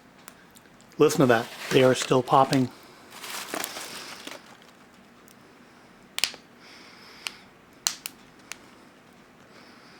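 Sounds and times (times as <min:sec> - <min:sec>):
pork rinds popping and crackling: 0:06.1 - 0:06.5, 0:07.2 - 0:08.7.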